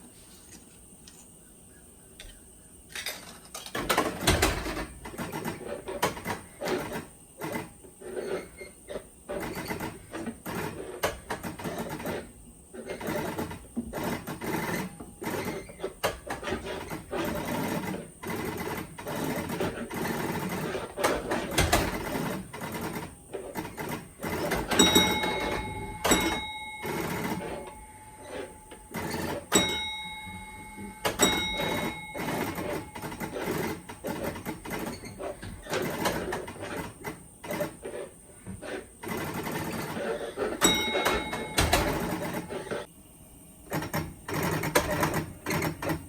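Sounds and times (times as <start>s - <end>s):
arcade game motor whirring: 3.6s - 42.9s
bell-like ring: 24.8s - 28.8s, 29.5s - 33.1s, 40.6s - 42.0s.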